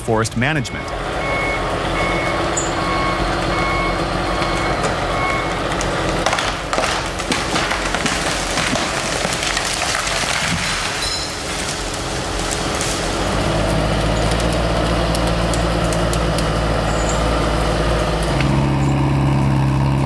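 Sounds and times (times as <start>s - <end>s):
heavy machine engine running: 0.0s - 20.0s
backup alarm beeping: 0.4s - 5.6s
wood splintering cracks: 5.6s - 19.7s.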